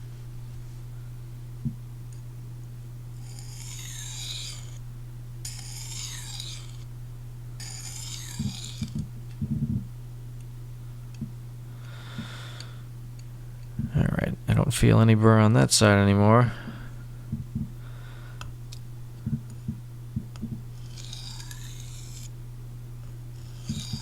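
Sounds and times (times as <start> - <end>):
steady low hum: 0.0 - 24.0
knife on sharpening stone: 3.2 - 4.8, 5.5 - 6.8, 7.6 - 9.0, 20.8 - 22.3, 23.4 - 24.0.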